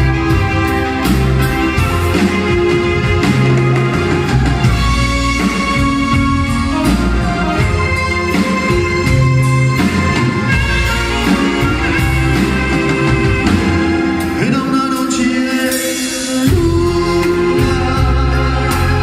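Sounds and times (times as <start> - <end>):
heavy bass line: 0.0 - 15.0, 16.5 - 19.0
keyboard chords: 0.0 - 19.0
person singing: 14.1 - 19.0.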